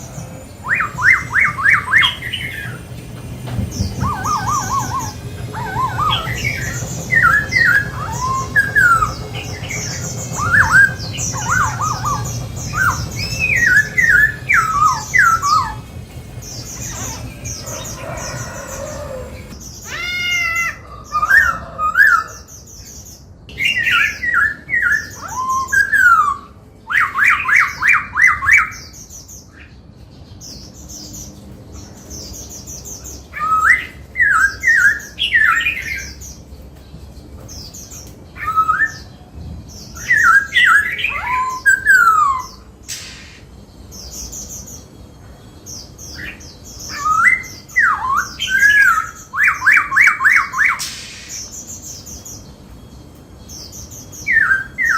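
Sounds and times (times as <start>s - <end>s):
bird singing whistled notes: 0.0s - 19.9s, 21.2s - 29.7s, 39.8s - 54.9s.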